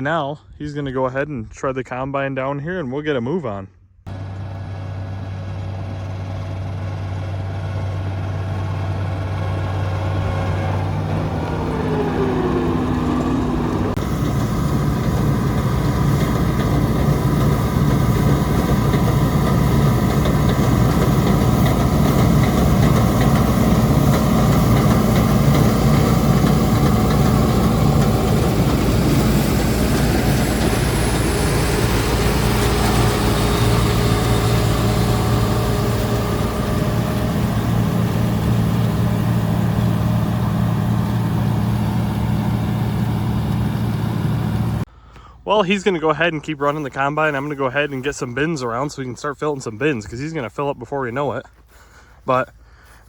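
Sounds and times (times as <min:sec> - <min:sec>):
combine harvester running: 0:04.1 - 0:53.0
rushing machine noise: 0:06.4 - 0:44.9.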